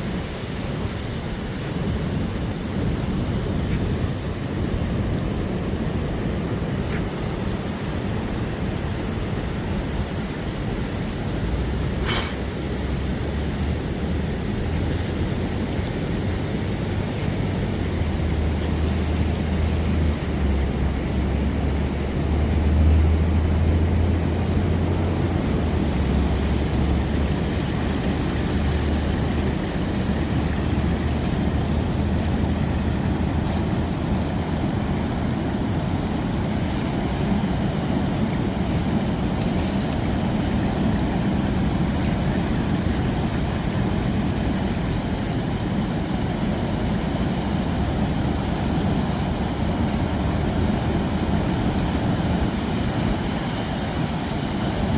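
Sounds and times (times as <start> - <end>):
ocean surf: 0.0 - 54.9
rain: 0.0 - 54.9
wind: 0.0 - 54.9.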